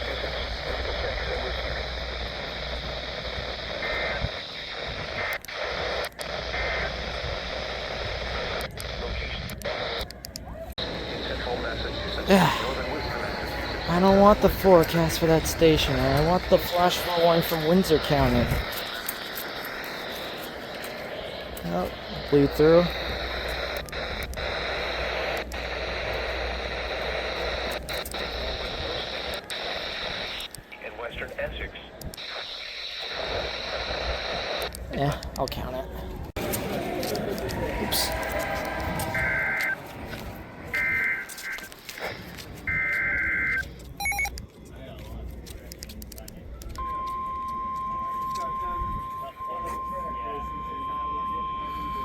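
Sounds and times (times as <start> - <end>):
radio static hiss: 0.0 - 44.8, 45.5 - 52.0.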